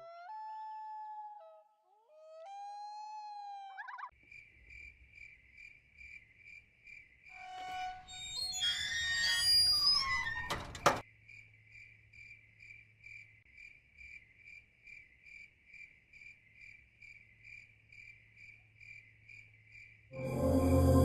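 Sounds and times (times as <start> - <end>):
music: 7.4 - 8.7, 20.2 - 21.0
cricket chirping: 11.0 - 20.1.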